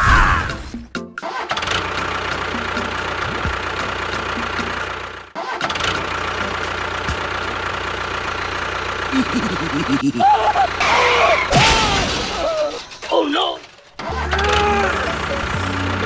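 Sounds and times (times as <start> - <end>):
motor whining: 14.0 - 16.0.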